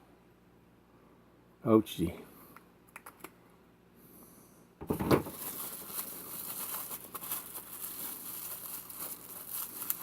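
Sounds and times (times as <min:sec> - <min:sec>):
plastic packaging crinkling: 0:05.0 - 0:10.0.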